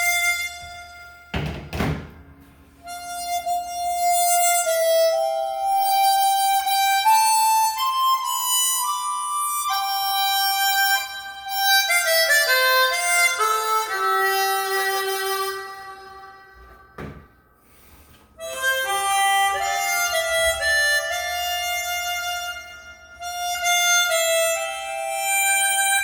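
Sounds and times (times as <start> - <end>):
amplified harmonica melody: 0.0 - 1.4, 2.2 - 26.0.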